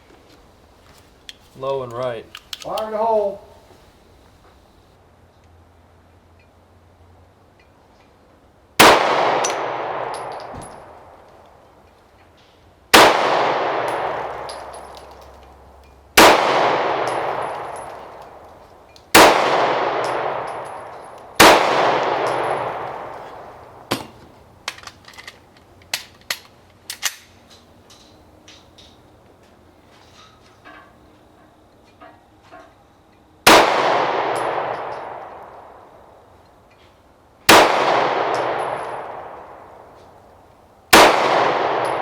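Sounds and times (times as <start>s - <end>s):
pistol shots with echo: 8.8s - 11.1s, 12.9s - 15.0s, 16.2s - 18.4s, 19.1s - 24.2s, 33.4s - 35.8s, 37.5s - 39.9s, 40.9s - 42.0s.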